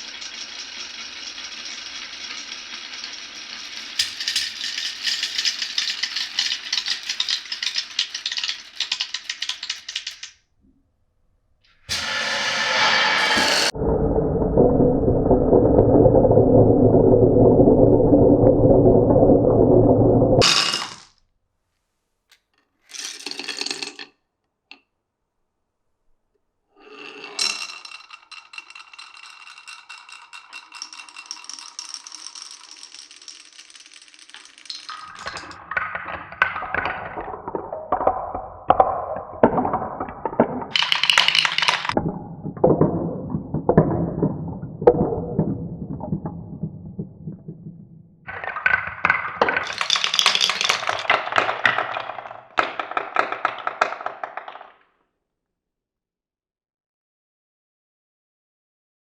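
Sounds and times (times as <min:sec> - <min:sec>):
ringing marble roll: 0:00.0 - 0:10.3, 0:27.0 - 0:54.8
marbles clattering in wooden run: 0:00.0 - 0:10.4, 0:20.4 - 0:21.1, 0:22.9 - 0:24.1, 0:27.2 - 0:54.9
low rolling rumble: 0:11.9 - 0:20.4, 0:42.0 - 0:48.3.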